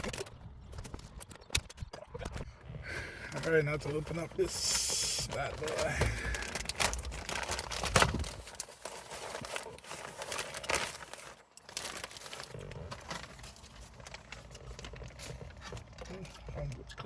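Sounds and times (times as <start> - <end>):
plastic packaging crinkling and tearing: 3.2 - 16.8.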